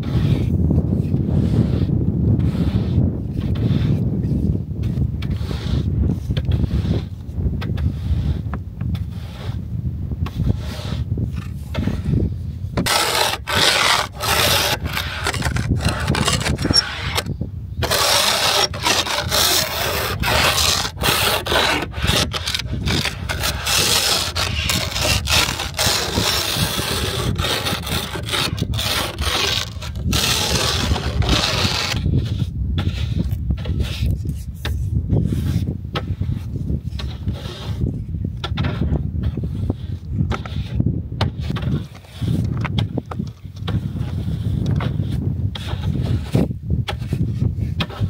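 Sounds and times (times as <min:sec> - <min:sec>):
snow scraping off metal: 0:12.8 - 0:34.2, 0:35.3 - 0:42.9, 0:43.7 - 0:48.0.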